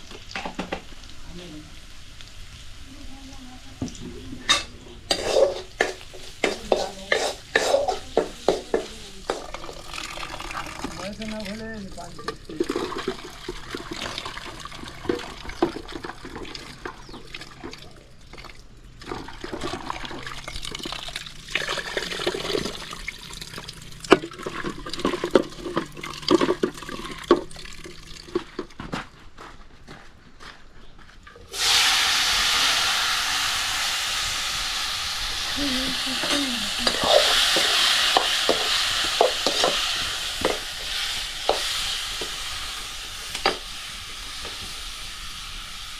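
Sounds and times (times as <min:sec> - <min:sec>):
food sizzling in hot oil: 0:00.0 - 0:17.6, 0:19.4 - 0:28.6, 0:31.5 - 0:45.9
stirring strokes: 0:05.1 - 0:17.0, 0:35.6 - 0:43.8.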